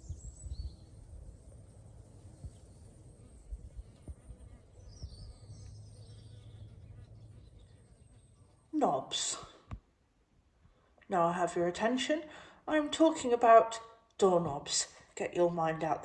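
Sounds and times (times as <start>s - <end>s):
faint high bird chirps: 0.0s - 1.2s, 2.2s - 8.8s.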